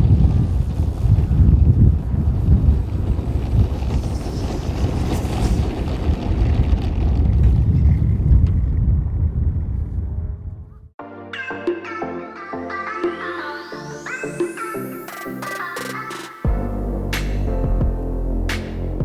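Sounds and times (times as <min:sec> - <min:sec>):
wind buffeting microphone: 0:00.0 - 0:10.9.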